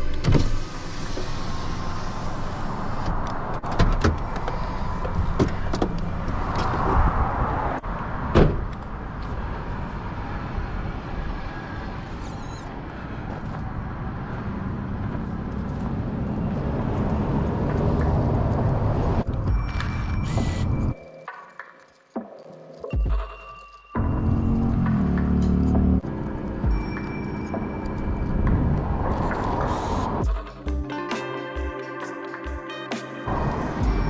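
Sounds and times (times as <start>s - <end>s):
car passing by: 0.0s - 19.5s
road traffic noise: 0.0s - 21.2s, 24.0s - 34.0s.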